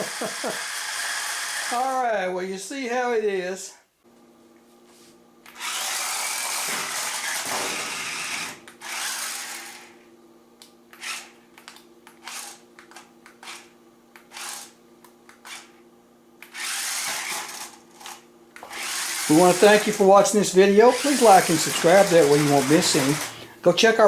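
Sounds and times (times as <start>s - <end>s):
toy car electric motors whirring: 0.0s - 2.0s, 5.5s - 10.0s, 10.9s - 15.8s, 16.4s - 20.0s, 20.7s - 23.4s.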